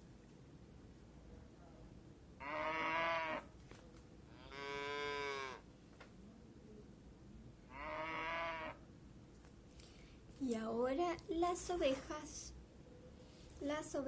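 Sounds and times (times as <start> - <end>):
cow mooing: 2.4 - 3.5, 4.4 - 5.6, 7.7 - 8.8.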